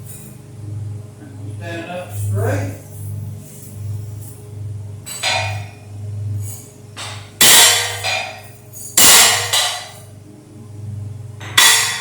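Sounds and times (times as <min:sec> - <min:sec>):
steady low hum: 0:00.0 - 0:12.0
hammer striking steel: 0:05.1 - 0:05.7, 0:07.0 - 0:10.0, 0:11.4 - 0:12.0.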